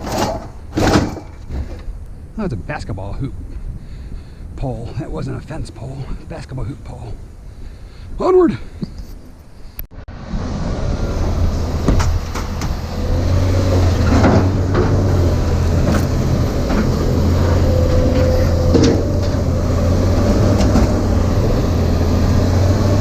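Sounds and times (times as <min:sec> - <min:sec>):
knocks and rattles: 0:00.0 - 0:01.9, 0:11.8 - 0:13.2, 0:13.8 - 0:21.3
vehicle engine and road hum: 0:08.7 - 0:23.0.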